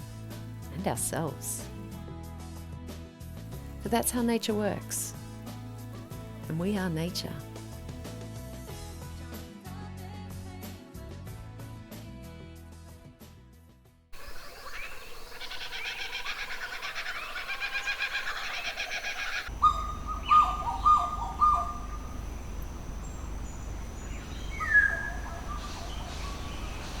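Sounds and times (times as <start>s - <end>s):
descending whistled bird calls: 14.2s - 27.0s
rapid bird twittering: 14.2s - 27.0s.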